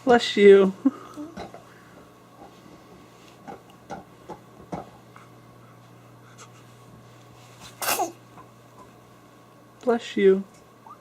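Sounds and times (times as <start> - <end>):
baby sneezing: 7.8 - 8.2.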